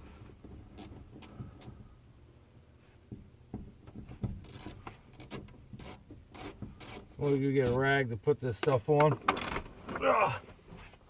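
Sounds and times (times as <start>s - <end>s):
tool scraping metal: 4.4s - 7.8s.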